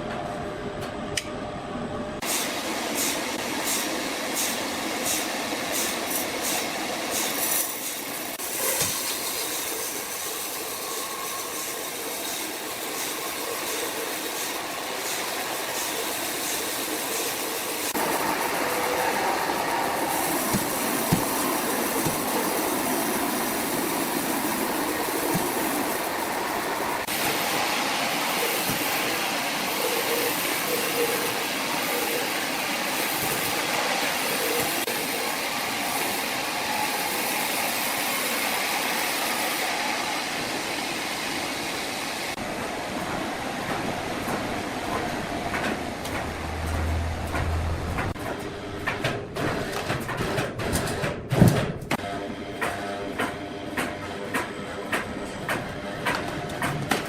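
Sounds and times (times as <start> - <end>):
sawmill saw cutting log: 2.4 - 39.4.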